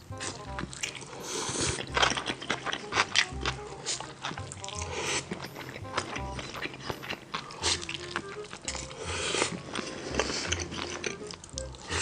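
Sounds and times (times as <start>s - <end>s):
person chewing and crunching: 0.0s - 12.0s
music with pulsing beat: 2.9s - 8.8s.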